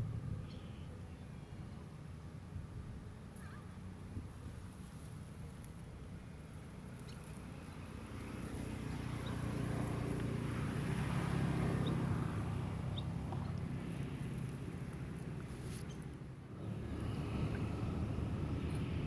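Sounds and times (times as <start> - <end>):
engine passing by: 6.6 - 19.0.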